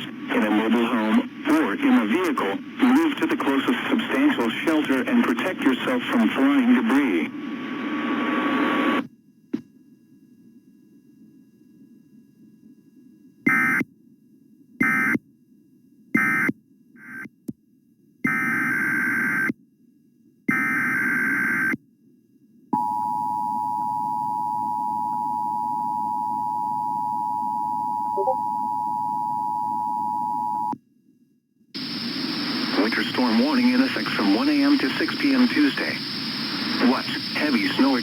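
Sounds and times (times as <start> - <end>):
two-tone attention signal: 27.1 - 30.6
warbling data bursts: 31.8 - 38.0.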